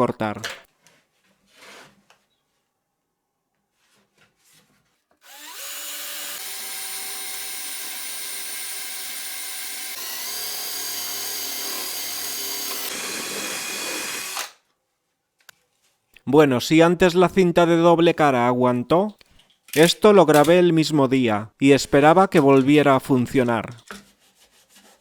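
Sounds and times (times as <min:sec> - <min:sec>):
electric drill boring into wood: 0:05.2 - 0:14.6.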